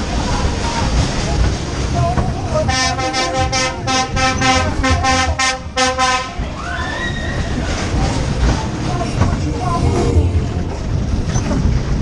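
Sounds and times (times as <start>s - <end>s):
low rumble: 7.8s - 12.0s.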